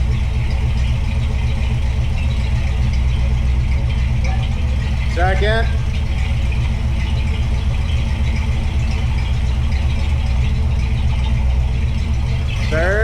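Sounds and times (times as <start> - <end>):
car engine running while driving: 0.0 - 13.0.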